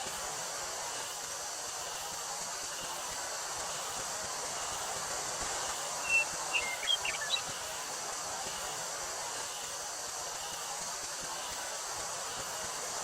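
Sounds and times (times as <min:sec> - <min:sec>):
cicadas droning: 0:00.0 - 0:13.0
bird chirping: 0:06.0 - 0:07.6.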